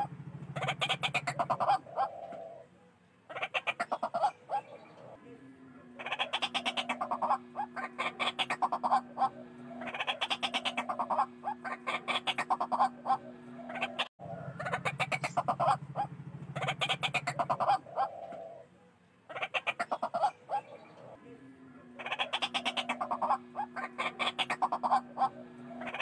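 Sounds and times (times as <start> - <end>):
bird calling in harsh chattering notes: 0.0 - 2.6, 5.9 - 18.7, 21.9 - 26.0
low steady hum: 4.4 - 19.3, 20.0 - 26.0.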